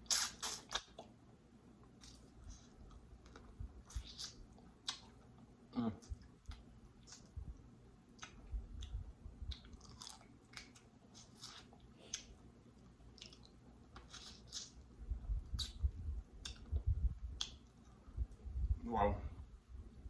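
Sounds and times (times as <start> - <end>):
sharp mouth clicks: 0.1 - 1.1, 3.9 - 5.1, 8.2 - 9.7, 15.5 - 16.7, 17.4 - 17.6
person chewing and biting food: 8.1 - 14.8.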